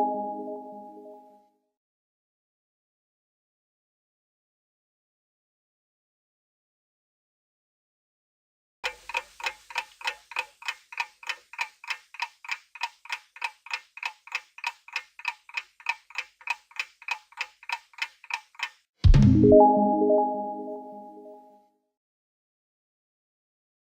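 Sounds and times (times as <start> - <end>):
clock ticking: 8.8 - 18.9.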